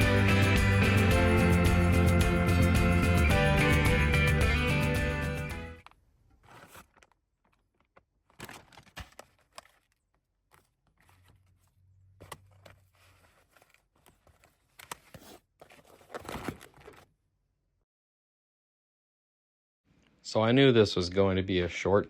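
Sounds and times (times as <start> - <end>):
plastic packaging crinkling: 6.4 - 11.6.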